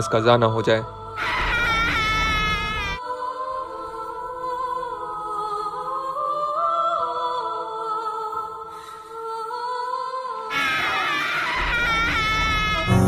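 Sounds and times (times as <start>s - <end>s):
slow wordless vocal melody: 3.0s - 11.2s.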